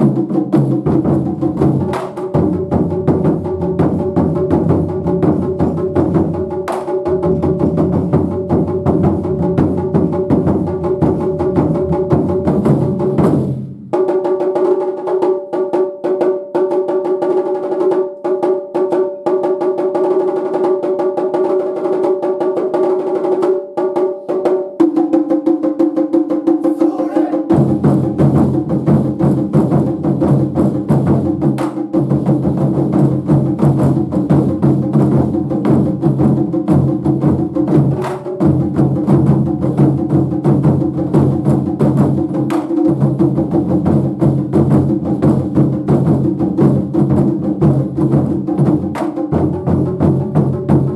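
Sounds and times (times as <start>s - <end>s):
deep drums: 0.0s - 14.2s, 26.5s - 50.9s
higher drums playing: 0.0s - 20.5s, 22.3s - 50.9s.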